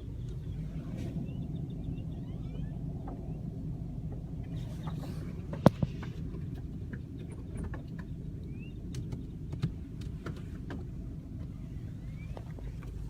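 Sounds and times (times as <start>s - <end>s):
faint rising chirp: 0.0s - 7.3s, 8.0s - 9.4s, 11.5s - 13.0s
car rumble: 0.0s - 13.0s.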